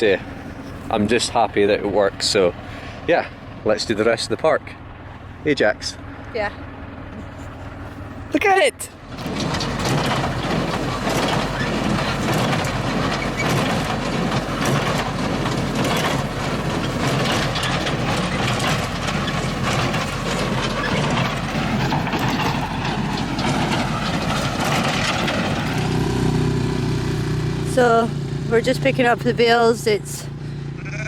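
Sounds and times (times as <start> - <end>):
tractor engine drone: 0.0 - 31.0
baler mechanical clatter: 7.0 - 30.4.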